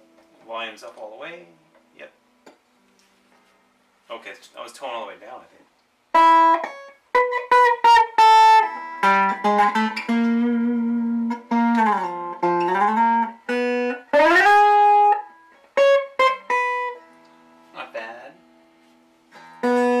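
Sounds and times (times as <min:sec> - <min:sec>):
electric guitar single notes: 0:06.1 - 0:18.7, 0:19.3 - 0:20.0.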